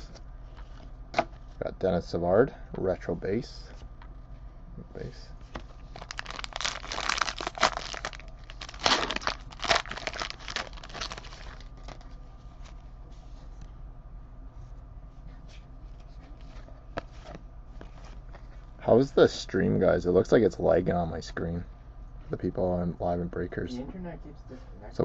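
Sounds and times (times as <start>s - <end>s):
wrapper tearing and crinkling: 5.8s - 12.2s.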